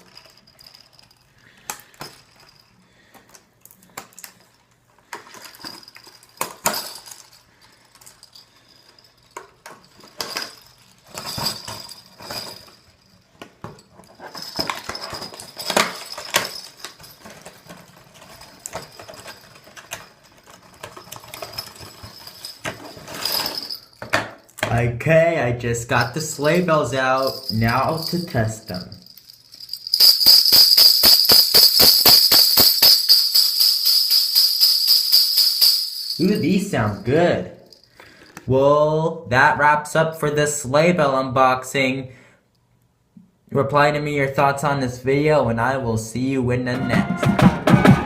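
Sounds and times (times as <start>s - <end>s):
sleigh bells jingling: 0.0s - 3.1s, 5.4s - 13.2s, 14.1s - 24.0s, 25.9s - 38.3s.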